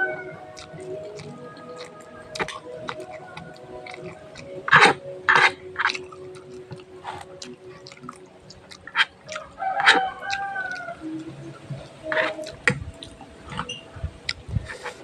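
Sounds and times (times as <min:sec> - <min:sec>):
rooster crowing: 0:00.0 - 0:00.5, 0:09.4 - 0:11.1
chewing clicks: 0:00.5 - 0:11.3.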